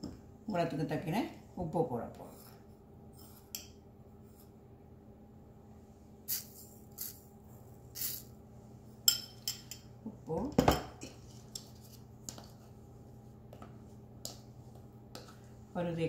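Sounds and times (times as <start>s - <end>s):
spoon clinking against dishes: 9.0s - 9.9s.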